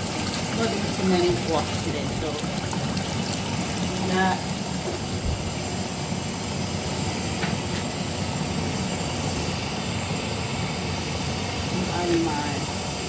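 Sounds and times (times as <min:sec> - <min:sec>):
tap water running into a tub: 0:00.0 - 0:06.6.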